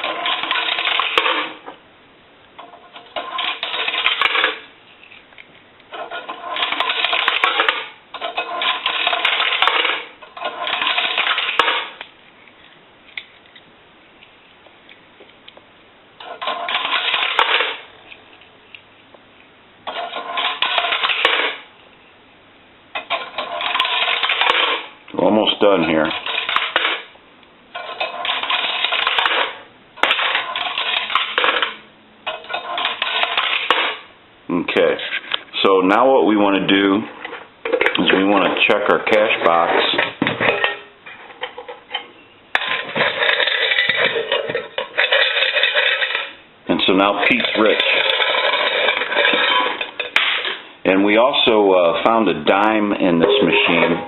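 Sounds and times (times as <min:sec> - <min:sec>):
coins clinking into metal coin box: 0:00.0 - 0:01.6, 0:02.6 - 0:04.6, 0:05.9 - 0:12.0, 0:16.2 - 0:17.9, 0:19.9 - 0:21.7, 0:23.0 - 0:24.9, 0:25.6 - 0:27.1, 0:27.8 - 0:34.1, 0:42.6 - 0:50.6, 0:53.1 - 0:54.0.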